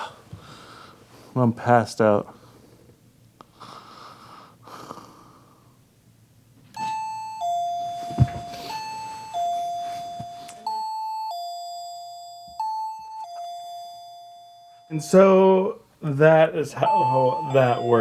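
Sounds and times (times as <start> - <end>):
two-tone ding-dong chime: 6.8 - 15.2, 16.9 - 18.0.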